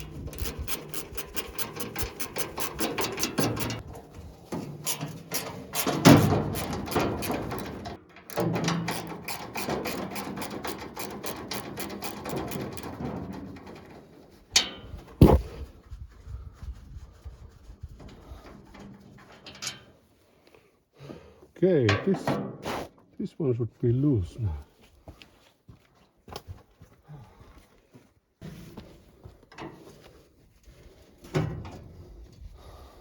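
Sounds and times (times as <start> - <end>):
hand tool rapid clicking: 0.0 - 3.8, 4.8 - 13.0
metal rattling: 0.0 - 15.4
sharp knocks: 15.2 - 15.4.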